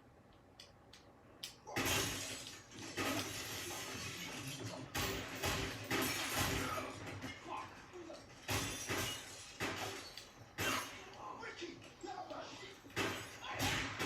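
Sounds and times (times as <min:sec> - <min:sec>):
loud crashing and shattering: 0:01.8 - 0:07.6, 0:08.3 - 0:11.0.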